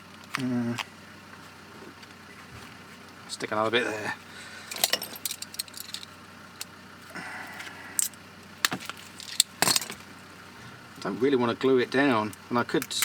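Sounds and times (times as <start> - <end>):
light metallic rattles: 4.6 - 6.8, 7.6 - 10.2.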